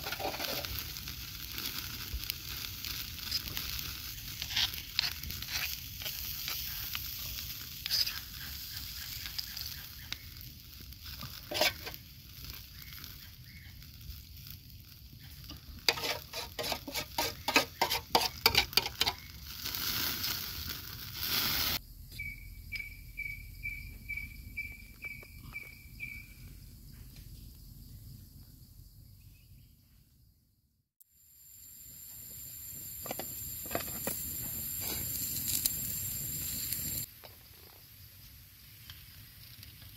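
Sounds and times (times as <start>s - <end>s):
octopus sizzling on hot rock: 0.0s - 21.8s, 31.0s - 39.9s.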